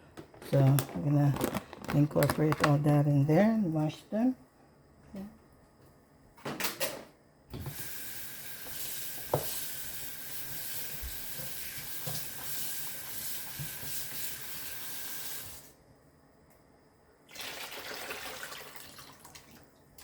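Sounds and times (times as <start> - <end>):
tap water running into sink: 7.6 - 15.7, 17.3 - 19.6.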